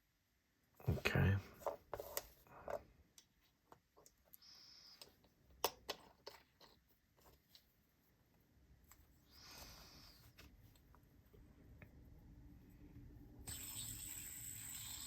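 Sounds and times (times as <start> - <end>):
soft hiss: 8.8 - 15.0.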